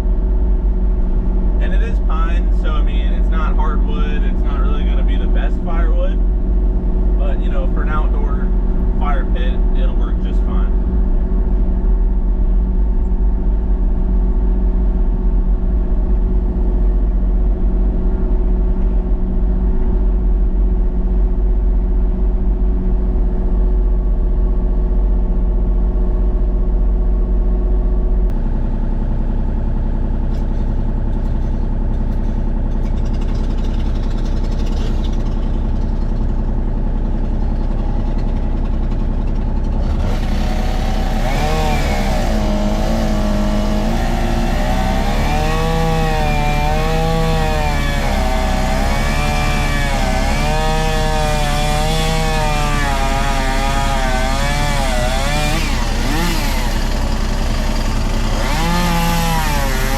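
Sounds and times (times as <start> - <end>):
engine running steadily: 0.0 - 59.9.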